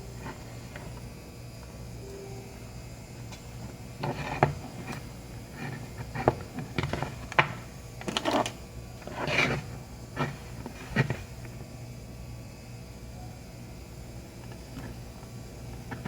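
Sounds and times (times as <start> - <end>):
scraping on plastic: 4.0 - 11.6.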